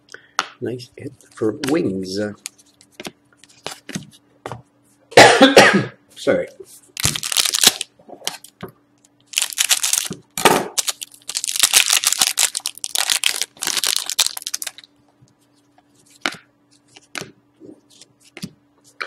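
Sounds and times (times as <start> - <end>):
wrapper being torn and crinkled: 7.0 - 7.9, 9.3 - 14.9.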